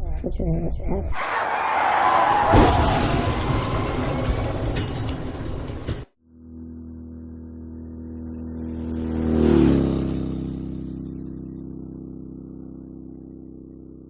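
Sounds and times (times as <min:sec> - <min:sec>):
car driving past: 0:08.6 - 0:11.2.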